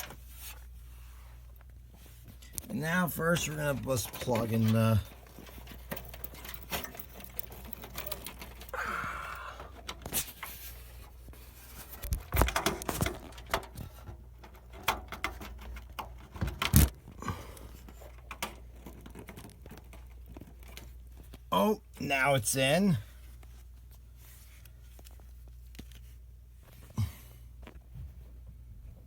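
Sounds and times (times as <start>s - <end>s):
plastic clicks and clatter: 3.8s - 8.8s, 11.8s - 21.5s.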